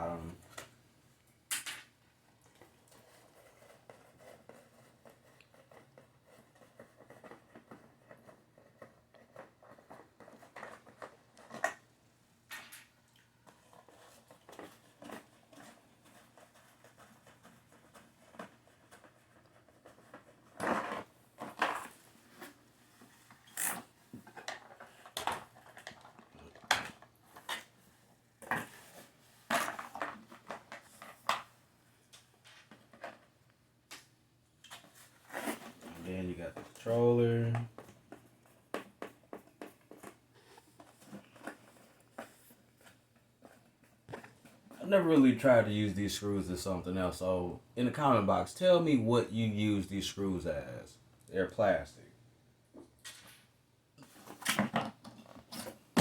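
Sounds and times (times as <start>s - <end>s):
plastic clicks and rustles: 23.3s - 27.8s.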